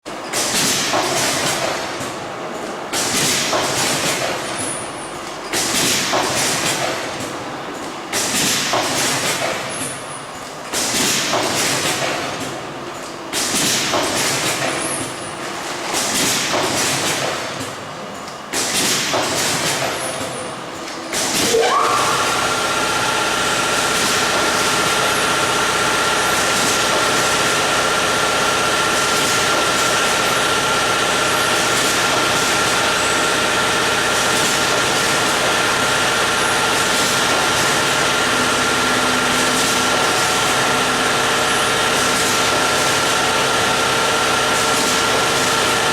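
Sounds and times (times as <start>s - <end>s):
packaging machine running: 0.2s - 45.9s.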